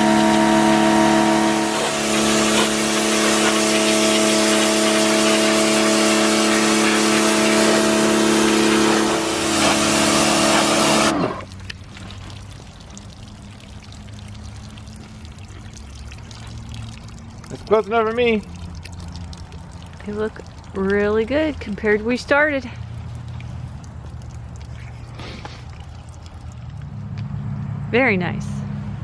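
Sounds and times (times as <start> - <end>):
pressure washer motor whine: 0.0 - 11.6
water jet hissing: 0.0 - 27.0.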